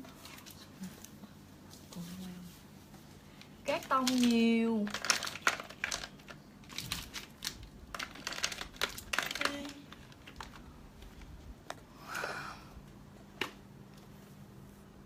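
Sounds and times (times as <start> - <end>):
packaging clicks and crinkles: 3.7 - 11.3.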